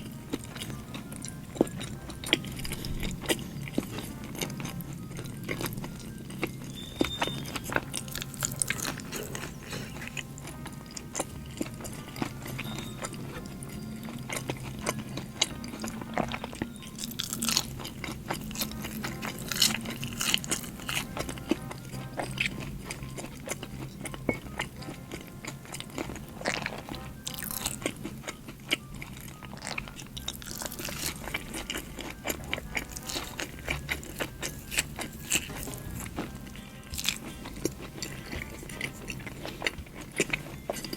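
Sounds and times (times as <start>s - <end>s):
chewing and biting: 0.0s - 40.9s
soft background music: 0.0s - 40.9s.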